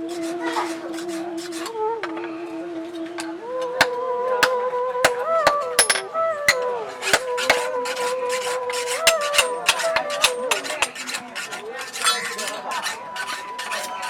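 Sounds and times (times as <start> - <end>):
music with held melody: 0.0 - 14.0
hammer striking metal: 3.2 - 11.2, 11.9 - 14.0.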